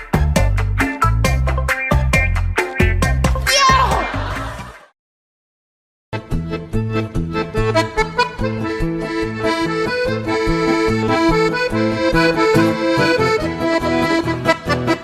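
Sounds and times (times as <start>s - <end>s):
accordion playing lively tune: 6.2s - 15.0s.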